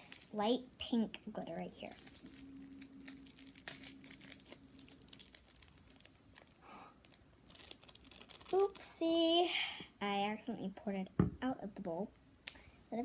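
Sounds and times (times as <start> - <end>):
faint steady hum: 0.0 - 13.0
rustling and crinkling: 1.2 - 9.0
glitter being poured and shaken: 1.4 - 8.9.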